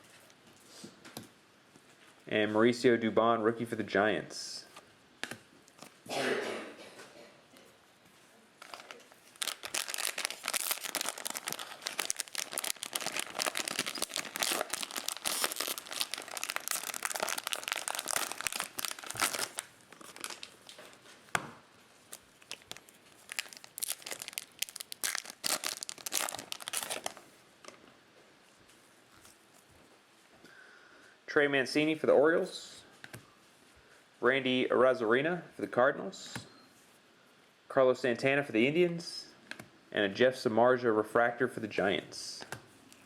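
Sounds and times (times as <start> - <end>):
plastic wrapper crinkling and tearing: 8.6 - 21.1, 22.0 - 27.3.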